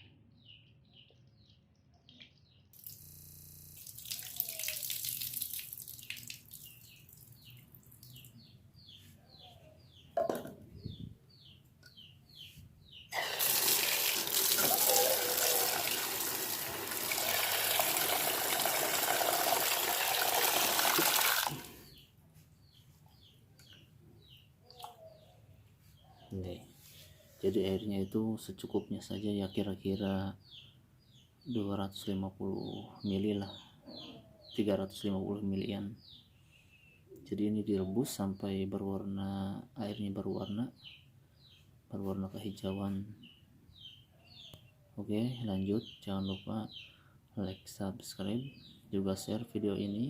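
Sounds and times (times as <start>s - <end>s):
knock: 10.2s - 10.6s
tap water running into a pot: 13.2s - 21.7s.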